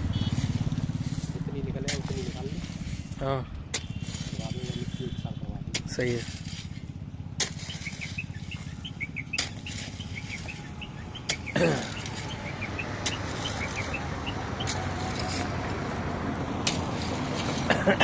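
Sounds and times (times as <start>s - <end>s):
small birds chirping: 7.4s - 15.3s.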